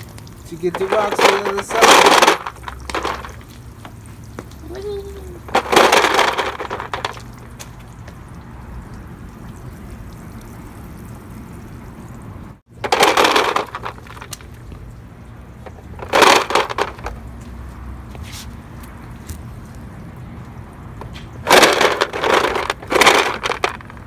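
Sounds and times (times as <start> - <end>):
water splashing: 0.0 - 24.0
rocks rattling: 0.5 - 4.0, 5.4 - 7.6, 12.8 - 14.7, 15.6 - 17.2, 21.4 - 24.0.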